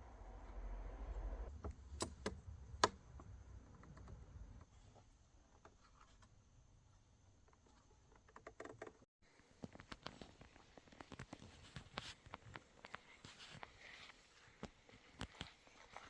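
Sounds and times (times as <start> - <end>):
wooden parts clicking and tapping: 7.4 - 9.0.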